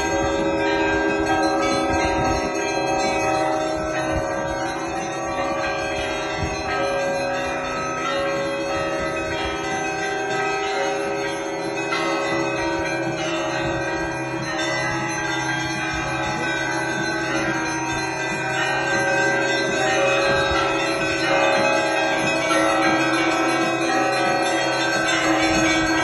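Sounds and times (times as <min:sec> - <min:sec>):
church bells ringing: 0:00.0 - 0:26.0.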